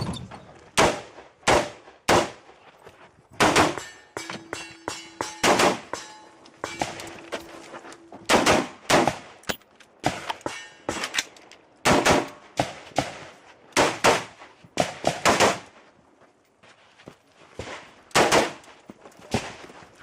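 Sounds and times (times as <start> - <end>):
gunshots: 0.8 - 2.4, 3.4 - 3.9, 5.4 - 6.0, 8.3 - 9.4, 11.8 - 15.7, 18.1 - 18.6.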